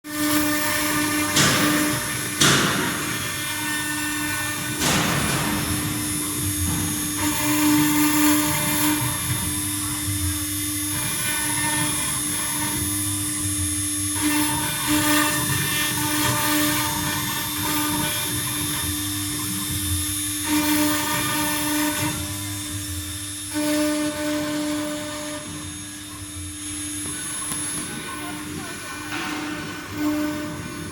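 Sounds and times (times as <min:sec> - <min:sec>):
spindle whine: 0:19.2 - 0:30.9.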